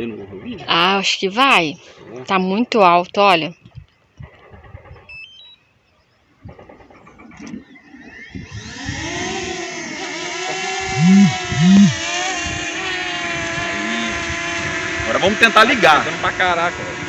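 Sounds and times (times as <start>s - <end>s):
drone propeller whine: 7.7s - 17.0s.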